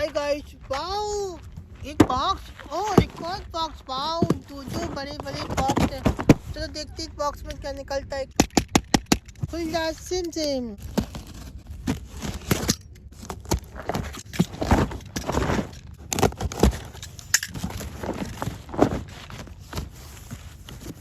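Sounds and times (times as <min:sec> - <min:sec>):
cardboard tearing and rustling: 0:10.8 - 0:21.0.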